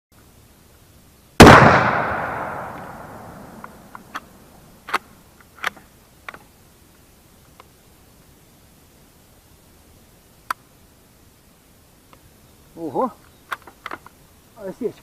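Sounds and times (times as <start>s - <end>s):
gunshot with echoing tail: 1.4s - 3.9s.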